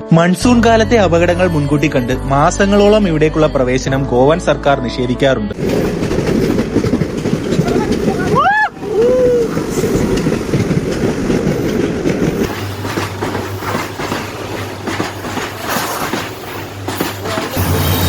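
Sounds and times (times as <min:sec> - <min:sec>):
train running on track: 0:05.5 - 0:18.0
wheels clicking on rails: 0:05.6 - 0:18.0.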